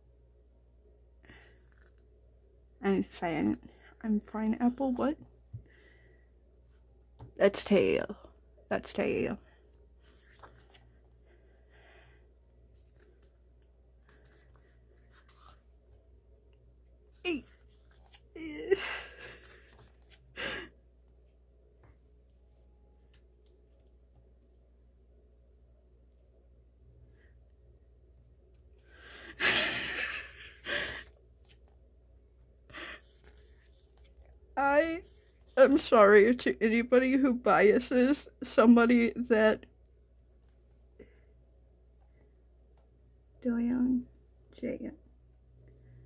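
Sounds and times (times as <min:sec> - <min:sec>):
paper pages rustling: 0:10.0 - 0:11.1, 0:12.7 - 0:16.0, 0:17.3 - 0:18.4, 0:19.2 - 0:20.4, 0:33.0 - 0:34.4.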